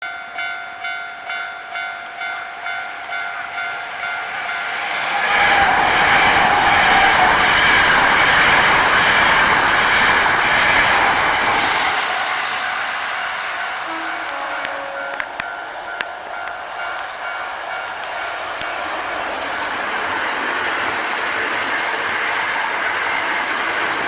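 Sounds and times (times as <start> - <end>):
level crossing warning bell: 0.0 - 5.8, 13.2 - 18.8
train passing at speed: 0.2 - 24.0.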